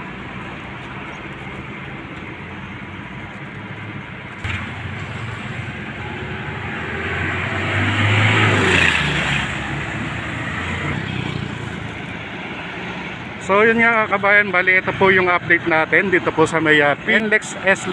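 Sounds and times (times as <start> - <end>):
street traffic noise: 0.0 - 17.9
vehicle passing close: 4.3 - 13.2.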